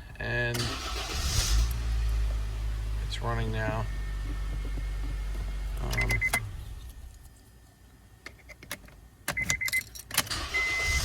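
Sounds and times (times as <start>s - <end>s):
car engine idling: 0.3s - 7.3s
ignition click: 3.6s - 6.6s
electronic beeps: 5.9s - 6.5s.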